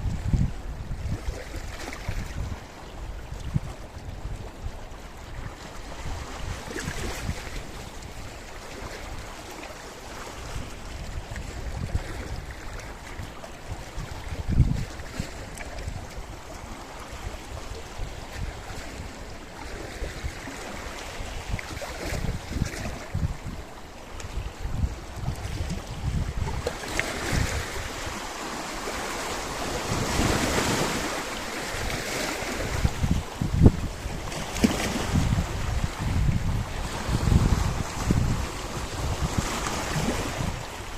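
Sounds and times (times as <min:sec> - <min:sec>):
wind buffeting microphone: 0:00.0 - 0:09.4, 0:10.1 - 0:40.9
waves washing against rocks: 0:05.7 - 0:40.9.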